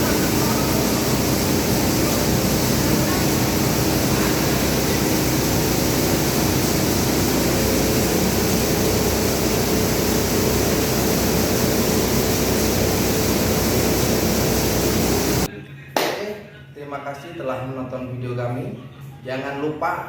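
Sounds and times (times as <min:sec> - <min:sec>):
grain dryer blower whirring: 0:00.0 - 0:15.5.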